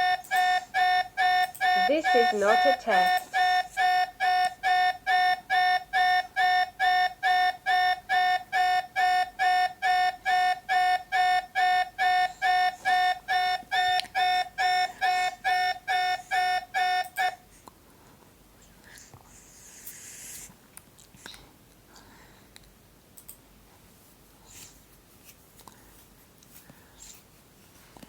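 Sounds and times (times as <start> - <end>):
buzzy electronic alarm beeps: 0.0 - 17.4.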